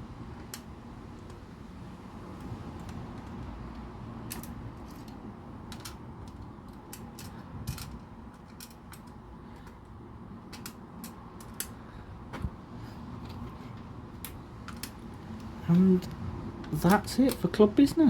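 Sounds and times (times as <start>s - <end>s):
low steady hum: 0.0s - 18.0s
plastic bricks clicking and tapping: 2.3s - 11.8s, 14.2s - 17.6s.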